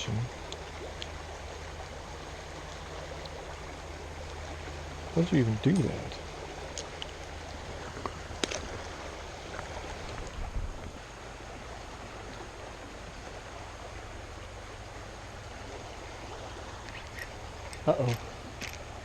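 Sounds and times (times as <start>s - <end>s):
floodwater rushing: 0.0s - 19.0s
faint clicks and knocks: 16.8s - 18.9s.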